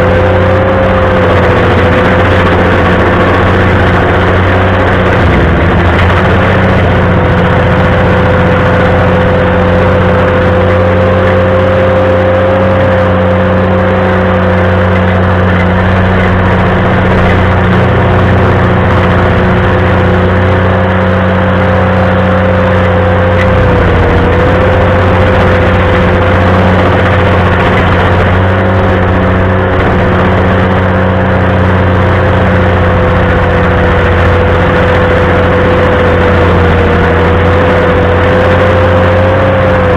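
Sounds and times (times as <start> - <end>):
stump grinder engine whining: 0.0 - 39.9.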